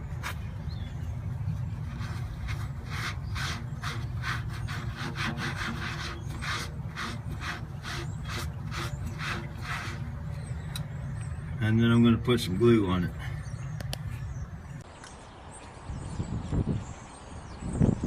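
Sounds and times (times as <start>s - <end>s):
steady low hum: 0.0s - 14.9s
scrubbing on rubber: 1.6s - 10.2s.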